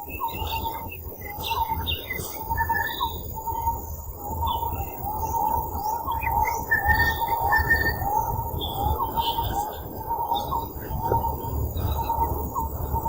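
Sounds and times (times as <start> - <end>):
birds chirping and calling: 4.4 - 13.0.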